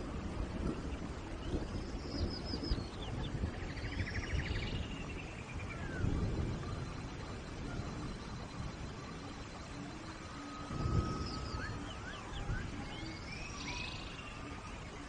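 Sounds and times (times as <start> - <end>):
rain pattering: 0.0 - 4.1, 4.7 - 13.3.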